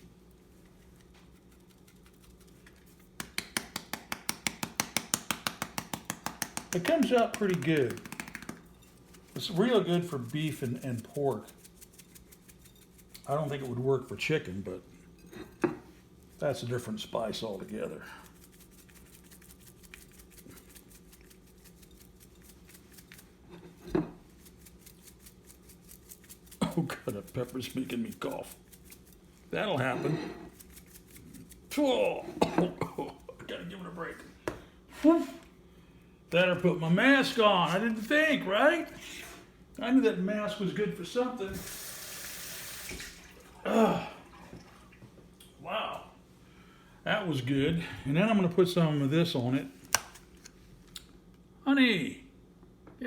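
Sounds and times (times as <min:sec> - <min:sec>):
room hum: 0:00.0 - 0:53.0
spice container shaking: 0:01.0 - 0:13.8, 0:16.3 - 0:23.4, 0:24.2 - 0:29.5, 0:30.4 - 0:32.1
man coughing: 0:32.3 - 0:33.3, 0:43.6 - 0:44.2.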